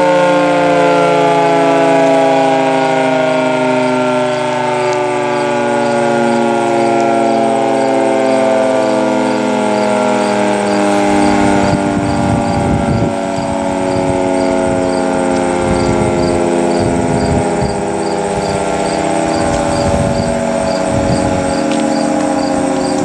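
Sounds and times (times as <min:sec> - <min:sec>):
outdoor warning siren: 0:00.0 - 0:23.0
low rumbles: 0:07.2 - 0:23.0.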